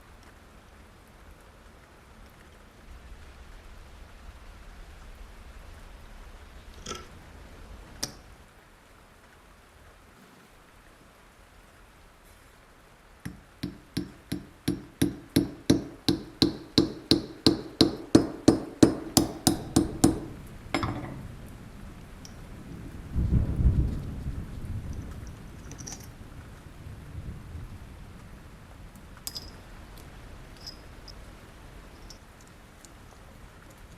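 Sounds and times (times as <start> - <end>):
knock: 13.3 - 21.2
small hammer tapping: 13.3 - 21.2.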